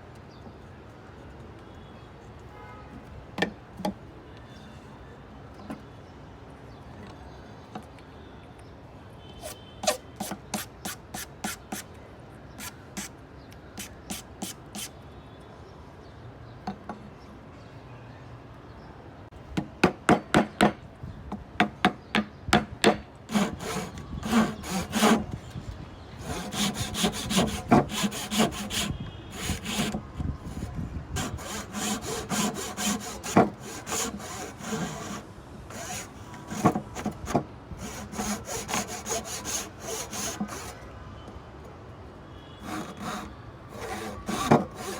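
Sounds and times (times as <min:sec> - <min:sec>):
hand saw cutting wood: 0:09.4 - 0:11.8, 0:12.6 - 0:13.1, 0:13.8 - 0:14.9, 0:23.3 - 0:25.3, 0:26.2 - 0:40.8, 0:42.6 - 0:44.9.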